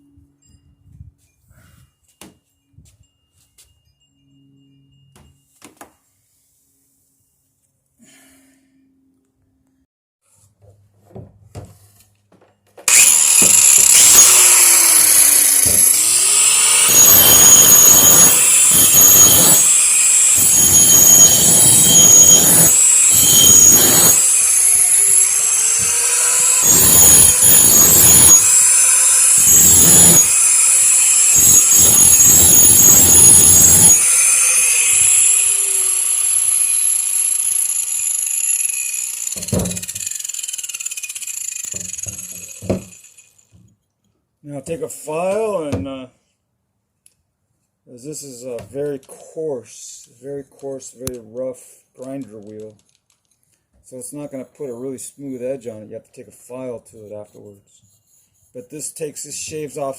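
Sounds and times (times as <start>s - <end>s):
electric grinder grinding steel: 12.9s - 43.4s.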